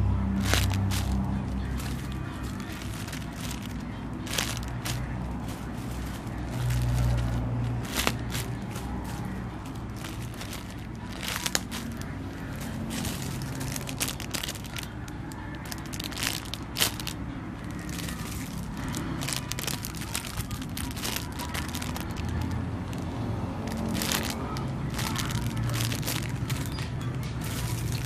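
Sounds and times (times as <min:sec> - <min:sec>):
plastic packaging crinkling: 0:00.3 - 0:23.0, 0:23.6 - 0:28.0.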